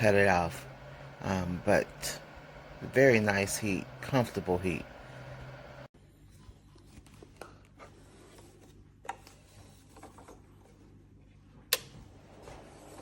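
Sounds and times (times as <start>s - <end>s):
low hum: 0.0s - 5.9s.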